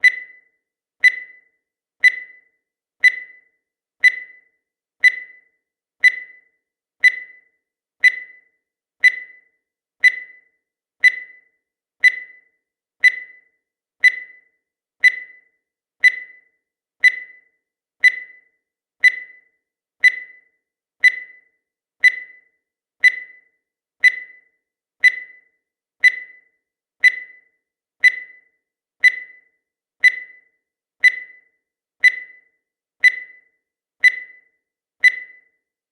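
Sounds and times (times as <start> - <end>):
short electronic beeps: 0.0 - 35.6.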